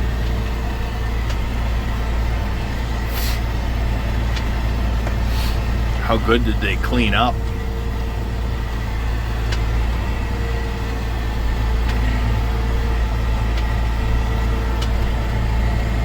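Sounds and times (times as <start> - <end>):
vehicle engine humming: 0.0 - 16.0.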